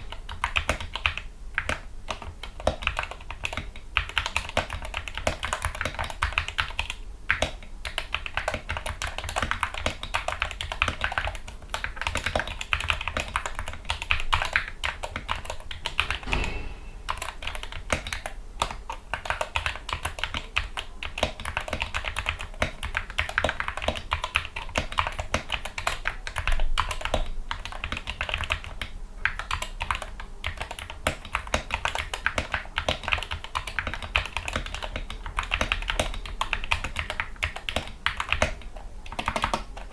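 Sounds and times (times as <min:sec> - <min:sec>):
low thud: 0:16.2 - 0:17.4.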